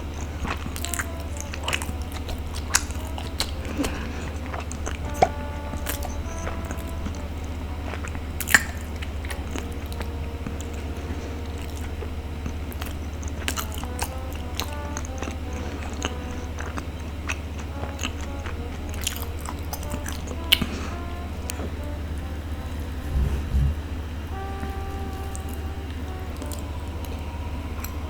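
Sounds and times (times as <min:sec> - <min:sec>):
light background music: 0:00.0 - 0:28.0
biting and chewing food: 0:00.1 - 0:22.0.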